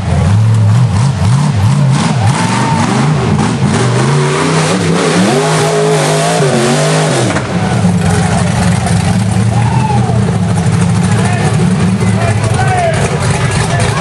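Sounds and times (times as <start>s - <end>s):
buggy engine revving: 0.0s - 14.0s.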